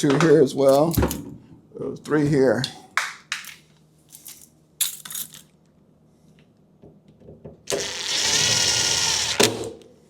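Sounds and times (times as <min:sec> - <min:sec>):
cordless power driver running: 0:07.7 - 0:09.8.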